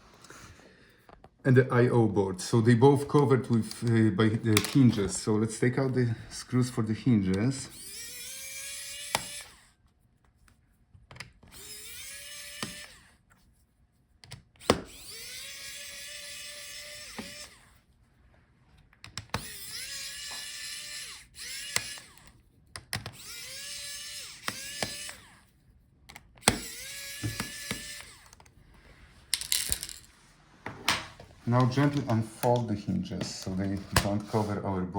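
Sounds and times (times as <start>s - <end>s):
electric screwdriver motor whirring: 7.4s - 9.8s, 11.3s - 13.3s, 14.4s - 17.8s, 19.2s - 25.5s, 26.1s - 28.6s.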